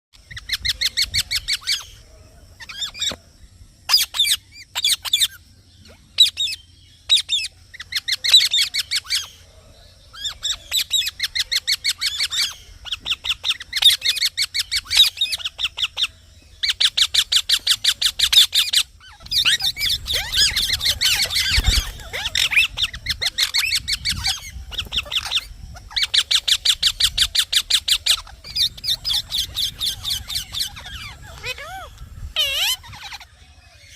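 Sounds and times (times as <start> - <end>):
parrot chirping: 6.2 - 9.4, 10.1 - 33.3.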